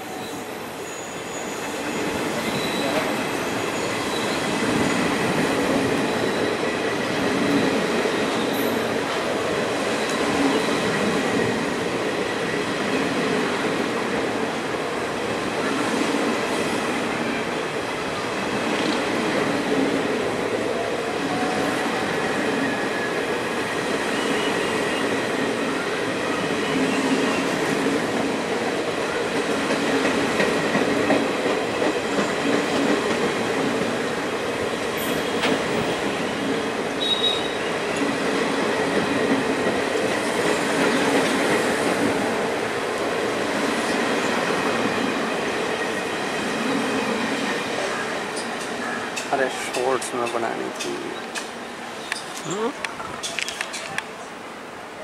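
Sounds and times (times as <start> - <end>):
high wheel squeal: 0.1 - 5.0, 6.0 - 6.6
train wheels clattering on rails: 26.2 - 42.6, 43.3 - 54.1.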